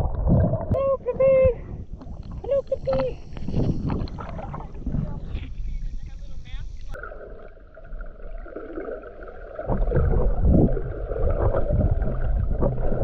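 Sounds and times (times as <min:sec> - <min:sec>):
muffled sea water sloshing: 0:00.0 - 0:13.0
surges of water: 0:06.9 - 0:13.0.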